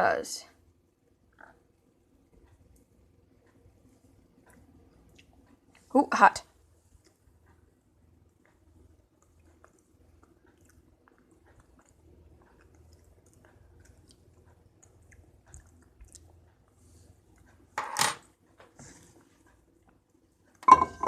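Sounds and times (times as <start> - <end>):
quiet chewing: 1.1 - 5.9, 6.9 - 20.6.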